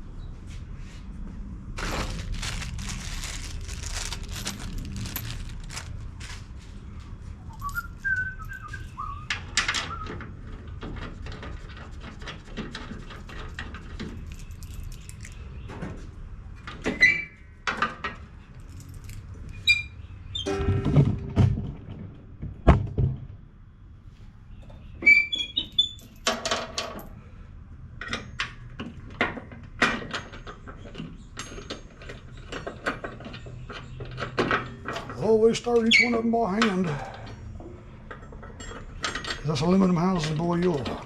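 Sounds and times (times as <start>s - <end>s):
handling noises: 0.5s - 11.2s, 12.6s - 17.0s, 17.8s - 19.6s
person whistling: 7.6s - 9.2s.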